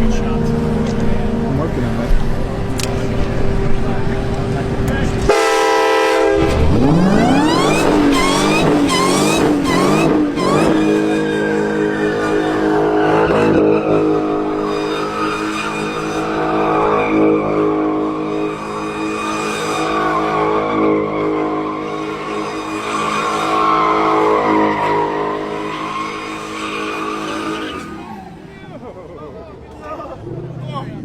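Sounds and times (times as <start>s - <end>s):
car engine revving high: 0.0s - 28.8s
tyres squealing: 6.4s - 28.5s.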